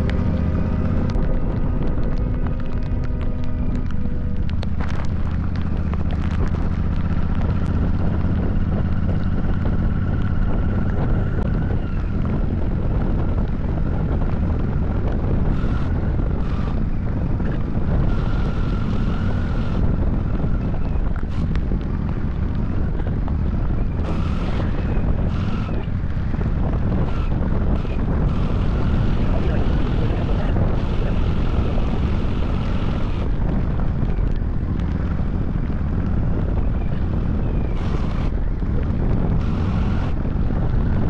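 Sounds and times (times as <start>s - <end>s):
motorcycle engine cruising: 0.0s - 41.0s
wind buffeting microphone: 0.0s - 41.0s.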